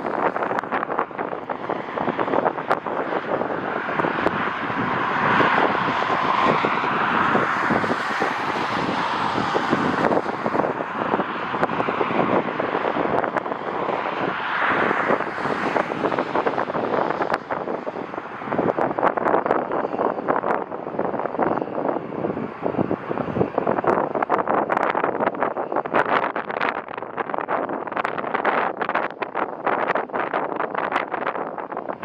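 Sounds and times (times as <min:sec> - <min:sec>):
jet engines passing: 0:00.0 - 0:19.6
wind buffeting microphone: 0:00.0 - 0:32.0.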